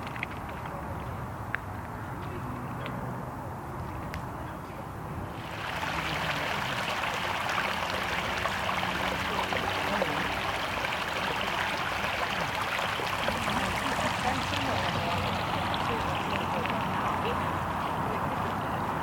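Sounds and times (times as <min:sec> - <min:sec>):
water rushing in stream: 0:05.4 - 0:19.0.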